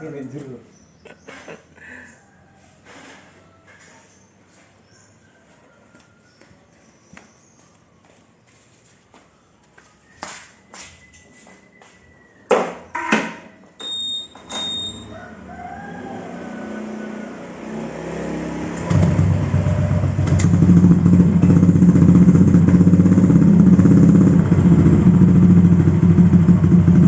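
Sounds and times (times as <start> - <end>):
short high beeps: 13.8 - 15.1
scooter engine revving: 14.6 - 27.0.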